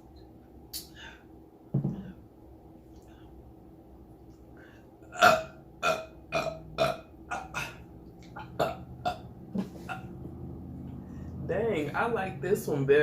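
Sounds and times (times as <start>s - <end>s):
person burping: 5.1s - 10.1s.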